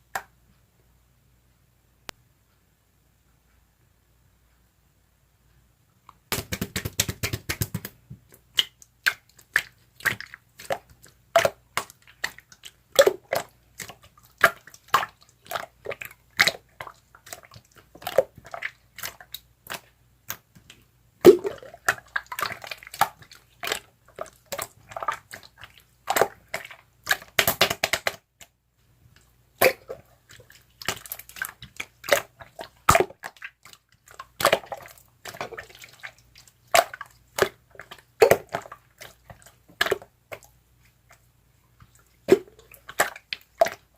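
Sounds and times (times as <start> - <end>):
slime squished by hand: 29.6 - 40.5.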